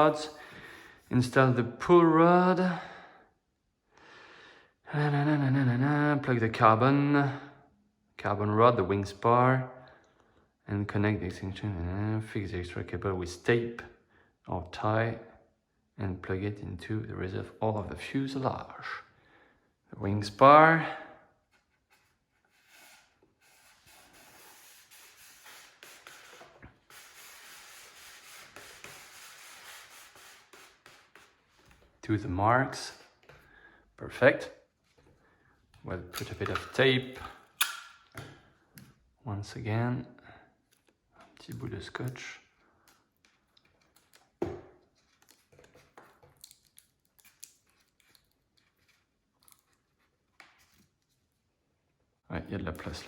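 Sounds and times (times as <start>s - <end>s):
faint rubbing and scraping: 21.4s - 31.8s
tape being cut and pressed: 37.5s - 38.2s.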